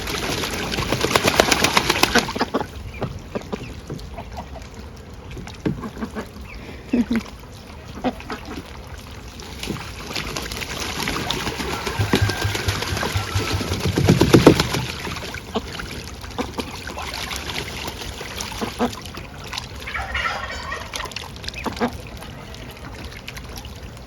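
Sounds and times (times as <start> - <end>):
ducks splashing in water: 0.0 - 24.0.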